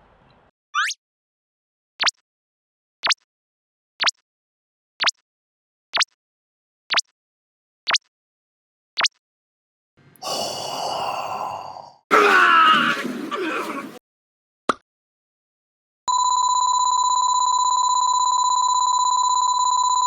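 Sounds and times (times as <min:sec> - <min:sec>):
breathy sigh: 0:10.2 - 0:14.0
vocal cry with wavering pitch: 0:10.2 - 0:14.0.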